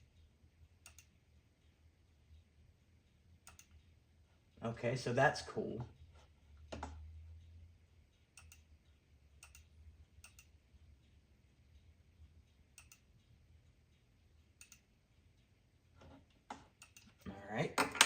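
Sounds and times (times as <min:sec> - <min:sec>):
faint computer mouse clicks: 0:00.8 - 0:01.1, 0:03.4 - 0:03.8, 0:08.4 - 0:08.7, 0:09.4 - 0:10.5, 0:12.8 - 0:13.1, 0:14.6 - 0:14.9.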